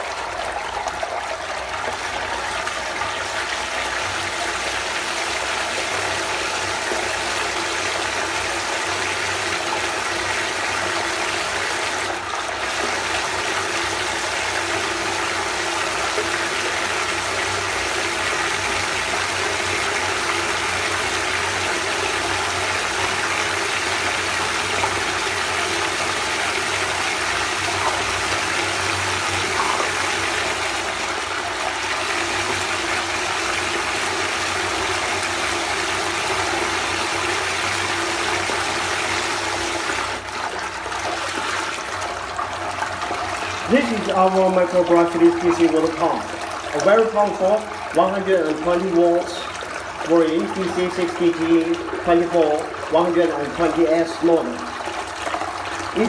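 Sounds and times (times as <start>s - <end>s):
faint low pump hum: 0.0s - 56.0s
water rushing and splashing: 0.0s - 56.0s.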